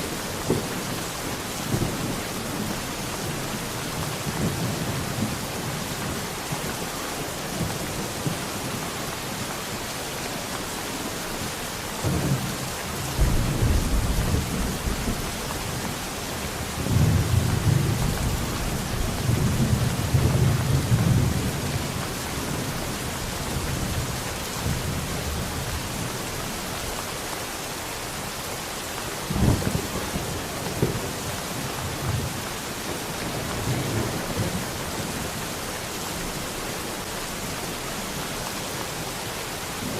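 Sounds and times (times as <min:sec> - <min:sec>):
steady rain: 0:00.0 - 0:39.9.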